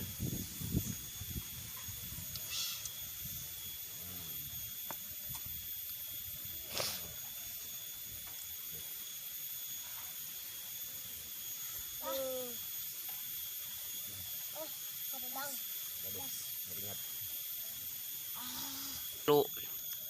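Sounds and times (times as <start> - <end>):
background hiss: 0.0 - 20.0
short sharp hiss: 6.7 - 7.1.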